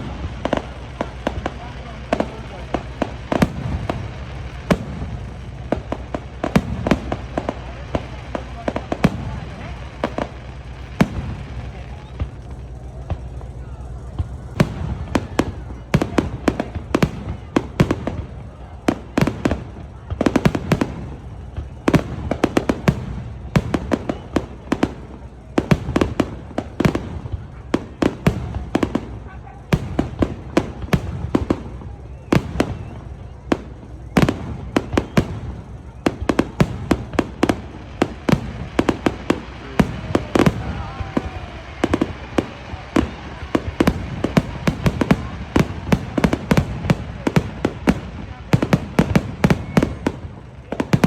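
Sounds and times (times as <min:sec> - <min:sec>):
fireworks bangs and booms: 0:00.0 - 0:51.0.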